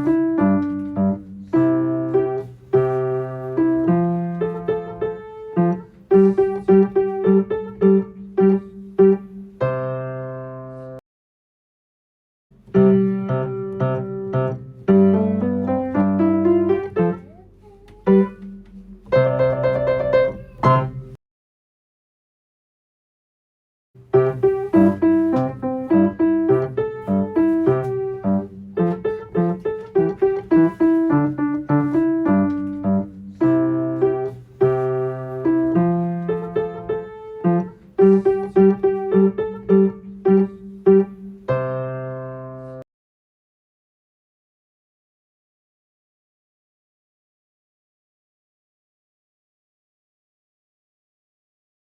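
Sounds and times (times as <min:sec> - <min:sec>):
solo piano playing: 0:00.0 - 0:11.0, 0:12.6 - 0:21.2, 0:24.0 - 0:42.8.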